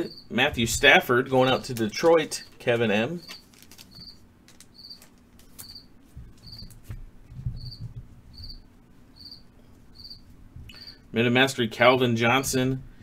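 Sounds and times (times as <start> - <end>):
cards rustling and clicking: 1.5 - 2.6, 3.2 - 7.0
cricket chirping: 4.8 - 6.7, 7.6 - 10.2.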